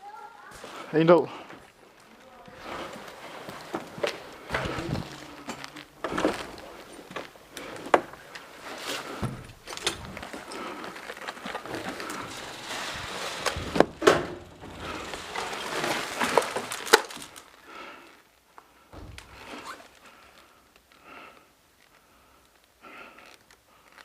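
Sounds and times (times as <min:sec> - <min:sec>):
rustling: 0:00.4 - 0:24.0
sharp clicks and knocks: 0:19.0 - 0:19.6.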